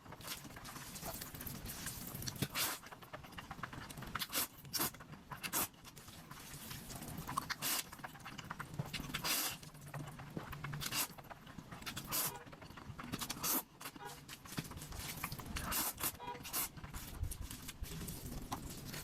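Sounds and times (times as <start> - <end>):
noodles slurped and chewed: 0.0 - 19.0.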